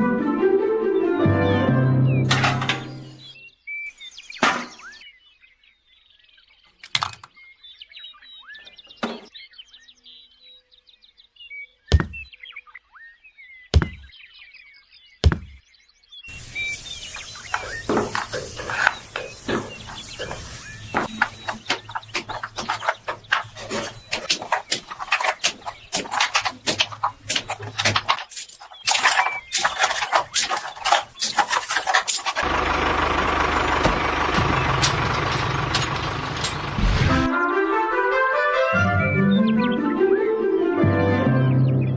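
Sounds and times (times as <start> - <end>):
birds chirping: 1.4 - 36.8
sharp knocks: 11.9 - 12.3, 13.8 - 14.1, 15.2 - 15.6, 17.6 - 32.4
small engine running: 16.3 - 37.3.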